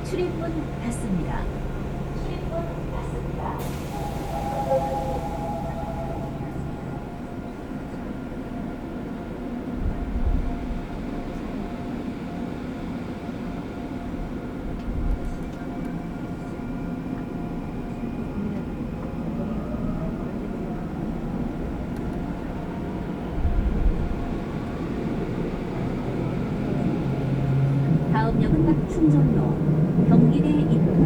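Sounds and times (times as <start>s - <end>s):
tone gliding upward: 3.9s - 7.6s.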